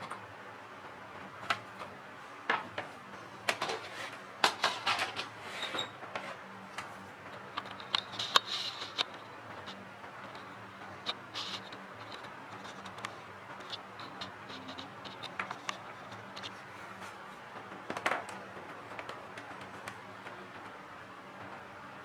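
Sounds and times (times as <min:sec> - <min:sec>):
small clicks and scrapes of parts: 0:03.5 - 0:17.2.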